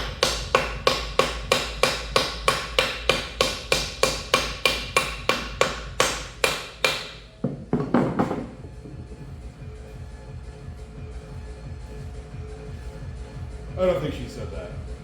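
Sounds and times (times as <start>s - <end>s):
hammer striking metal: 0.0s - 9.1s.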